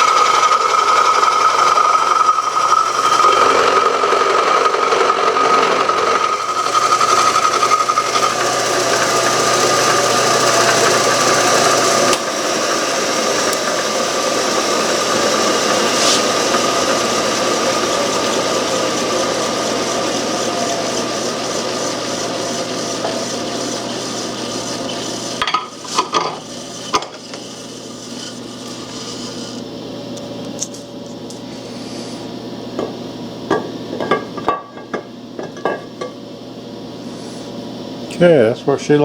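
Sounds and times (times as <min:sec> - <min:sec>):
machine tool cutting metal: 0:00.0 - 0:29.6.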